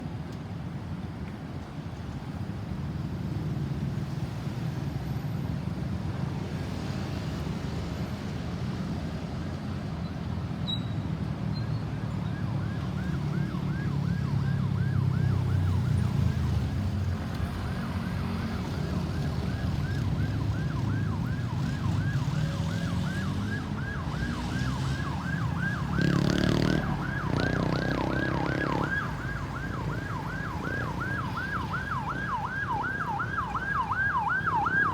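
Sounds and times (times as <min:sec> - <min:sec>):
road traffic rumble: 0:00.0 - 0:34.9
ambulance siren yelping: 0:12.0 - 0:34.9.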